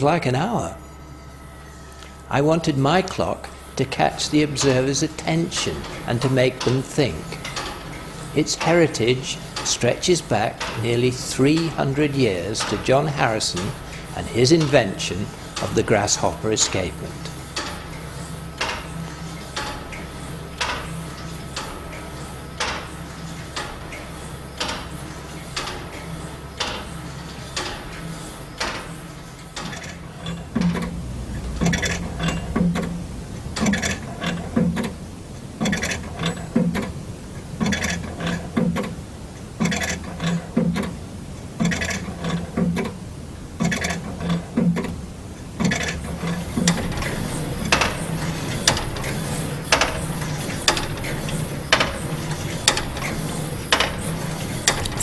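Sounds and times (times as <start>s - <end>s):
clock escapement ticking: 0.0s - 41.0s, 41.6s - 42.9s, 43.6s - 55.0s
steady low hum: 0.0s - 55.0s
low knock and clatter: 30.5s - 35.0s.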